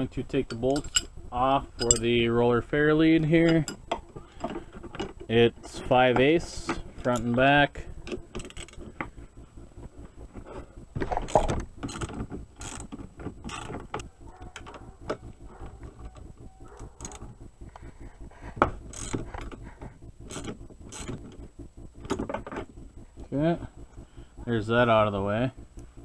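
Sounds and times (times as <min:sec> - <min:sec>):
ratchet wrench clicking: 0:00.4 - 0:02.2, 0:11.2 - 0:15.3, 0:16.1 - 0:17.3, 0:18.8 - 0:19.6, 0:20.2 - 0:21.3.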